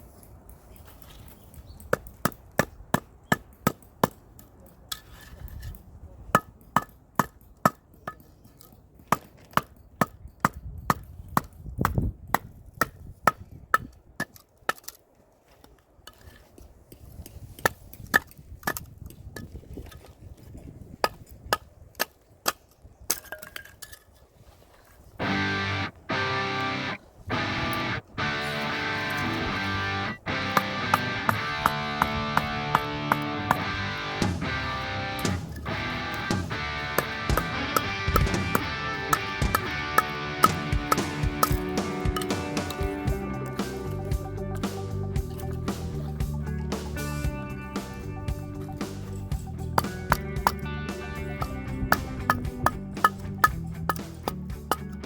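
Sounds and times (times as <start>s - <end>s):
guitar music: 25.2s - 55.0s
firewood splitting strikes: 30.3s - 43.6s.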